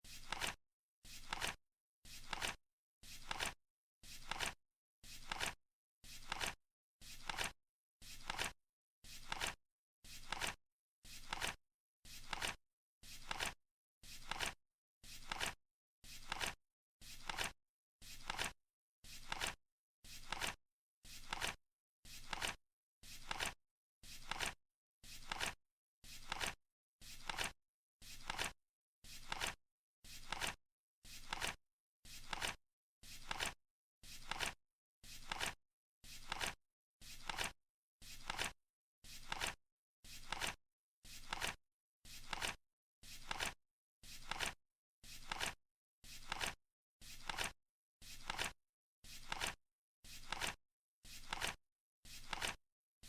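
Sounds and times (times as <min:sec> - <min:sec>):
flip clock cards flipping: 0:00.2 - 0:00.6, 0:01.2 - 0:01.6, 0:02.2 - 0:02.6, 0:03.2 - 0:03.6, 0:04.2 - 0:04.6, 0:05.2 - 0:05.6, 0:06.2 - 0:06.6, 0:07.2 - 0:07.5, 0:08.2 - 0:08.5, 0:09.2 - 0:09.6, 0:10.2 - 0:10.6, 0:11.2 - 0:11.6, 0:12.2 - 0:12.6, 0:13.2 - 0:13.6, 0:14.2 - 0:14.6, 0:15.2 - 0:15.6, 0:16.2 - 0:16.6, 0:17.2 - 0:17.5, 0:18.2 - 0:18.5, 0:19.2 - 0:19.6, 0:20.2 - 0:20.6, 0:21.2 - 0:21.6, 0:22.2 - 0:22.6, 0:23.2 - 0:23.6, 0:24.2 - 0:24.6, 0:25.2 - 0:25.6, 0:26.2 - 0:26.6, 0:27.2 - 0:27.5, 0:28.2 - 0:28.5, 0:29.2 - 0:29.6, 0:30.2 - 0:30.6, 0:31.2 - 0:31.6, 0:32.2 - 0:32.6, 0:33.2 - 0:33.6, 0:34.2 - 0:34.6, 0:35.2 - 0:35.6, 0:36.2 - 0:36.6, 0:37.2 - 0:37.5, 0:38.2 - 0:38.5, 0:39.2 - 0:39.6, 0:40.2 - 0:40.6, 0:41.2 - 0:41.6, 0:42.2 - 0:42.6, 0:43.2 - 0:43.6, 0:44.2 - 0:44.6, 0:45.2 - 0:45.6, 0:46.2 - 0:46.6, 0:47.2 - 0:47.5, 0:48.2 - 0:48.5, 0:49.2 - 0:49.6, 0:50.2 - 0:50.6, 0:51.2 - 0:51.6, 0:52.2 - 0:52.6.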